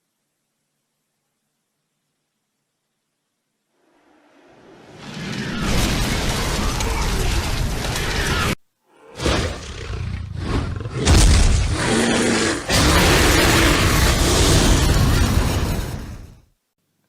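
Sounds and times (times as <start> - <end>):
rumbling sound effect: 12.7 - 16.5.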